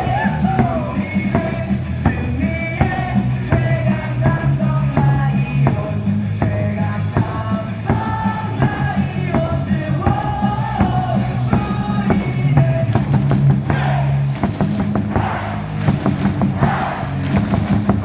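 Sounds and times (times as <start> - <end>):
crowd yelling and cheering: 0.0 - 2.0, 7.3 - 18.0
song over loudspeakers: 0.0 - 18.0.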